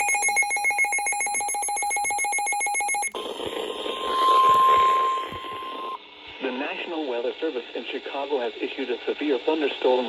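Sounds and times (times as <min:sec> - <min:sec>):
rapid electronic alarm beeps: 0:00.0 - 0:06.0
radio static: 0:03.2 - 0:06.0.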